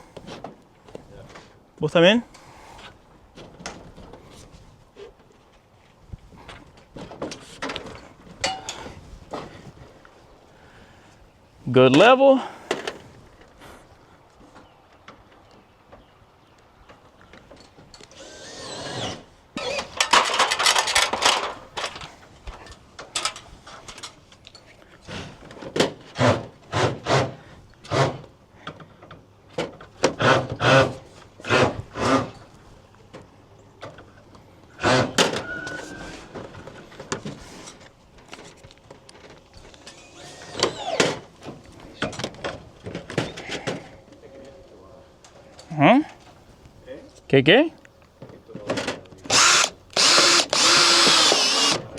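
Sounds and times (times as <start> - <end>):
power drill driving screws: 18.1 - 20.9, 39.8 - 41.3, 49.3 - 51.9
metal gutter knocks and clatter: 19.9 - 22.0.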